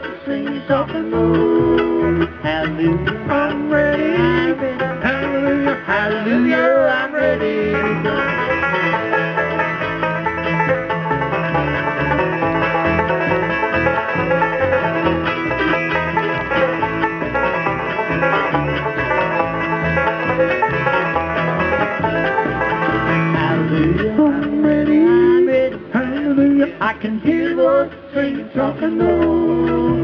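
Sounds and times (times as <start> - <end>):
banjo picking: 0.0 - 30.0
bluegrass band playing: 0.0 - 30.0.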